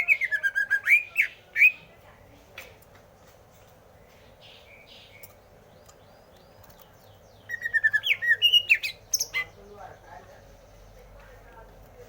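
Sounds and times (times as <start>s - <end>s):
bird singing whistled notes: 4.4s - 9.6s.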